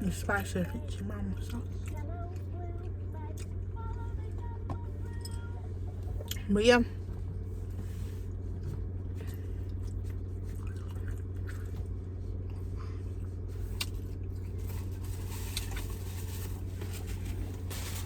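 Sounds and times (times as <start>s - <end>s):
car engine idling: 0.0s - 18.0s
close-up chewing and biting: 9.7s - 11.9s.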